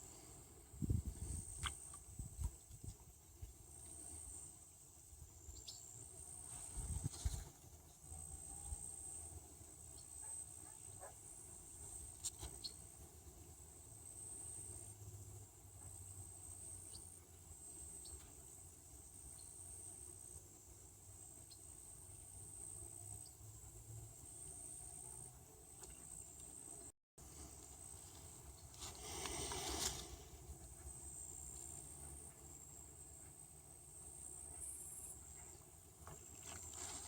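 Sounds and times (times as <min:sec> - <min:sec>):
outdoor background noise: 0:00.0 - 0:37.0
insect chirping: 0:27.8 - 0:37.0.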